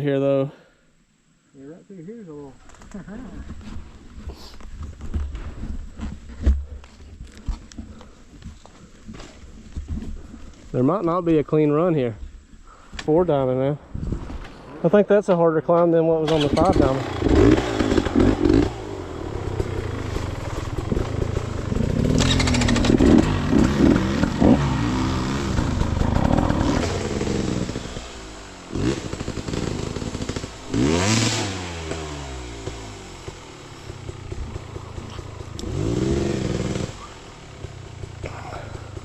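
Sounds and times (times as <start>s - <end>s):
dirt bike engine revving: 16.2s - 39.0s.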